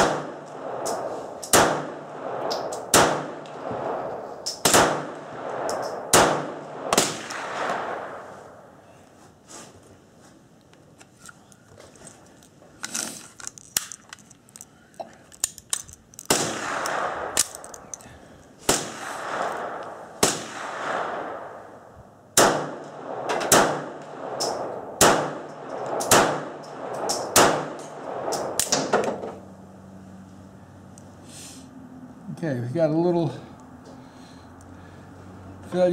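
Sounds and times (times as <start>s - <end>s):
pistol shots with ringing echo: 0.0s - 8.2s, 16.3s - 17.6s, 18.7s - 21.8s, 22.4s - 29.0s
metallic clicks: 12.8s - 18.1s.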